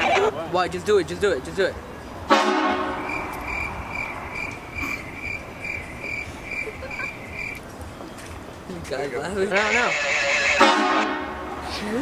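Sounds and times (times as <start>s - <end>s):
train horn blast: 2.3s - 3.4s, 9.6s - 11.6s.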